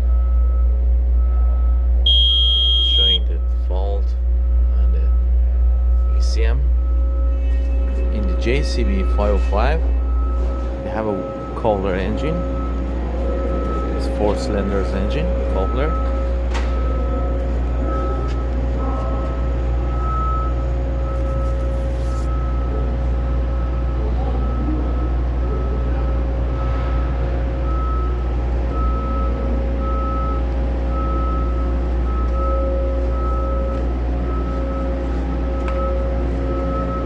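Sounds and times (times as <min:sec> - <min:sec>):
diesel engine idling: 0:00.0 - 0:37.0
high beep: 0:01.3 - 0:03.8, 0:05.9 - 0:22.7.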